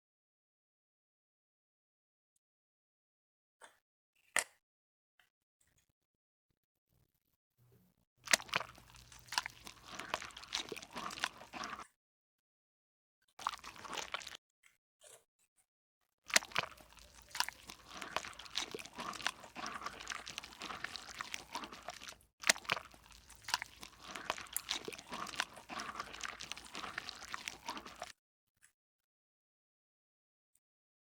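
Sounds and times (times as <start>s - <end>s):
slime crackling and popping: 8.3s - 11.8s, 13.4s - 14.4s, 16.3s - 28.1s.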